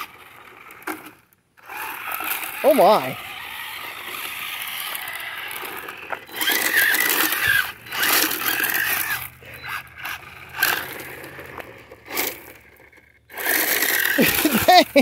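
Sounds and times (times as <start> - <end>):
model car motor whining: 0.0 - 15.0
scrabbling noise: 1.6 - 15.0.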